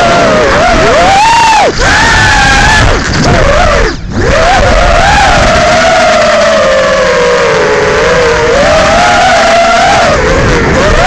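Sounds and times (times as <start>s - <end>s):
drone motors whining: 0.0s - 11.0s.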